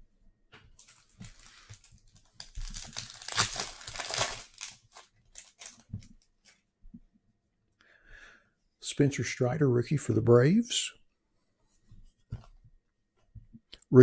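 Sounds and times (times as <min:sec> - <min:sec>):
wrapper tearing and crinkling: 0:00.8 - 0:05.9.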